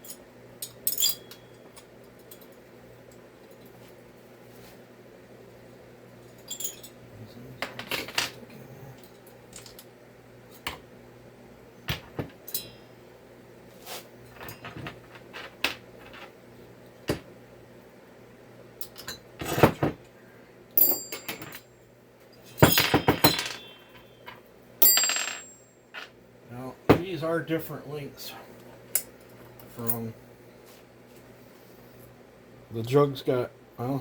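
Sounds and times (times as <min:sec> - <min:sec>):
metal tools clinking on workbench: 0:00.0 - 0:02.6, 0:06.3 - 0:07.0, 0:11.9 - 0:12.9, 0:14.3 - 0:16.3, 0:20.8 - 0:21.7, 0:22.4 - 0:26.1.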